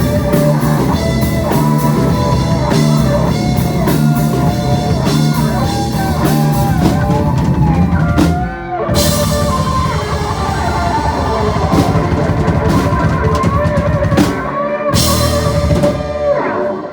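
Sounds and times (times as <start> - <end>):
drum kit: 0.0 - 16.9
electric guitar solo: 0.0 - 16.9.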